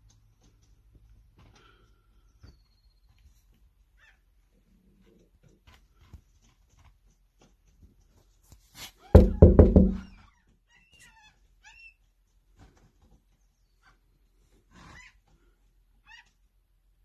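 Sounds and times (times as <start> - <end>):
flurry of knocks and thumps: 9.2 - 10.2.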